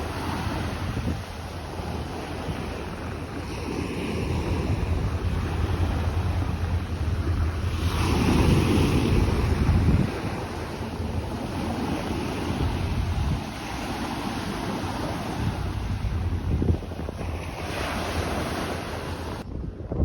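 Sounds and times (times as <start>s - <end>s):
waves washing onto beach: 0.0s - 19.5s
wind rumbling on microphone: 0.0s - 20.0s.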